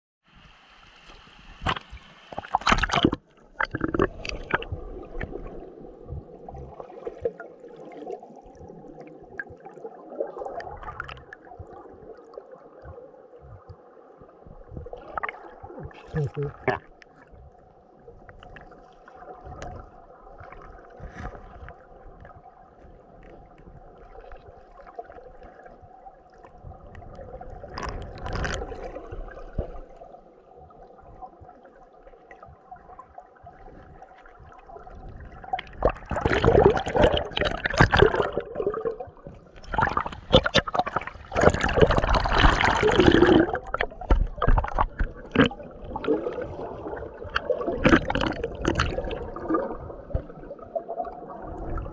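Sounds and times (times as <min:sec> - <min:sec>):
stream water gurgling: 0:00.3 - 0:51.9
water splashing and bubbling: 0:01.0 - 0:51.9.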